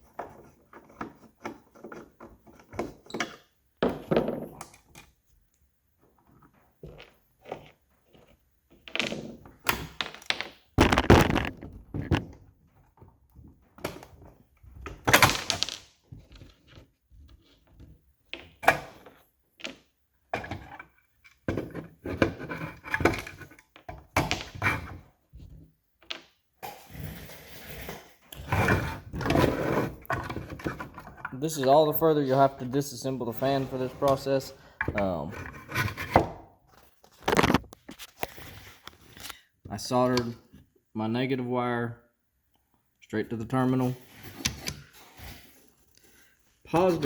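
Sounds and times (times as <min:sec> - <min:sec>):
plastic parts knocking and scraping: 0:00.0 - 0:05.2, 0:06.0 - 0:26.8, 0:27.8 - 0:31.6, 0:33.3 - 0:39.4.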